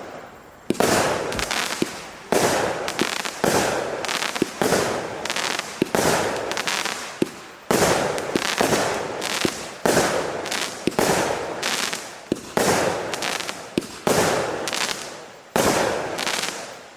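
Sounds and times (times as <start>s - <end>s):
firework hiss: 0.0s - 16.9s
short pops: 0.7s - 3.5s
firework cake shots: 0.7s - 16.8s.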